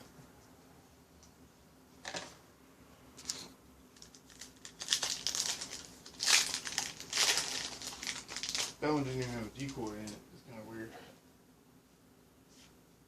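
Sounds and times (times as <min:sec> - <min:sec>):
foil wrapper crinkling: 0:03.2 - 0:10.1.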